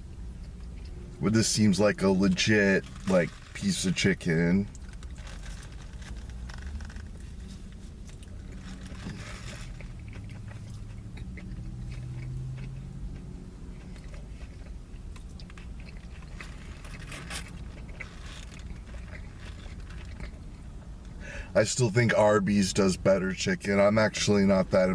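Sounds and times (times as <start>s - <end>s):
muffled highway traffic rumble: 0.0s - 24.9s
person chewing crispy food: 4.6s - 21.2s.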